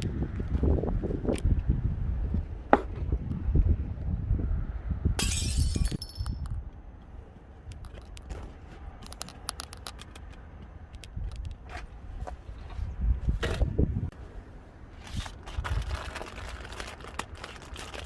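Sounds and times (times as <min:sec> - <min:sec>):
wind buffeting microphone: 0:00.0 - 0:05.2, 0:11.0 - 0:14.2, 0:15.4 - 0:16.7
small hard objects clinking: 0:05.2 - 0:06.4.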